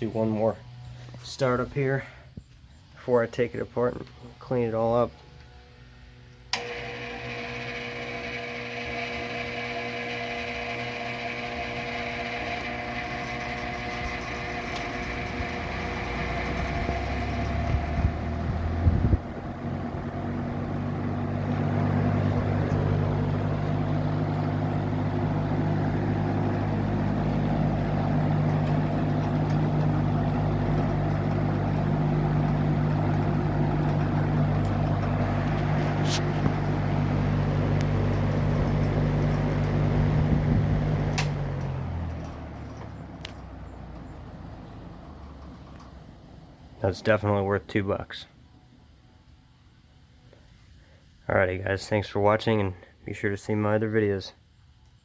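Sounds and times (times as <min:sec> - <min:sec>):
fan motor whirring: 0:04.5 - 0:47.2
air rushing from fan blades: 0:13.3 - 0:41.6.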